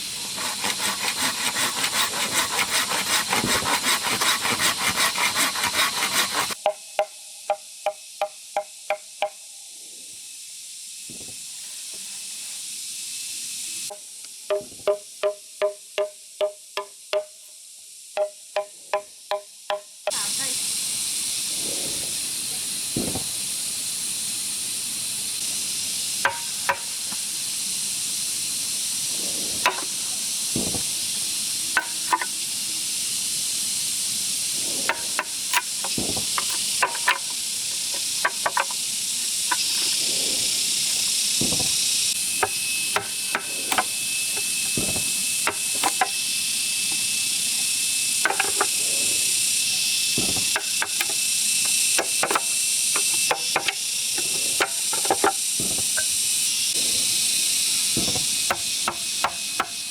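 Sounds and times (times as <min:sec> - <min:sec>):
thin steady whine: 0:00.0 - 0:06.6, 0:20.1 - 0:59.9
steady high-pitched hiss: 0:00.0 - 0:59.9
sharp knocks on bamboo: 0:14.5 - 0:17.3, 0:26.2 - 0:26.9, 0:30.6 - 0:30.9, 0:41.4 - 0:41.8, 0:42.4 - 0:46.1, 0:50.2 - 0:51.2, 0:58.0 - 0:59.8
dull thuds: 0:41.4 - 0:43.1, 0:44.7 - 0:45.7, 0:58.0 - 0:58.4.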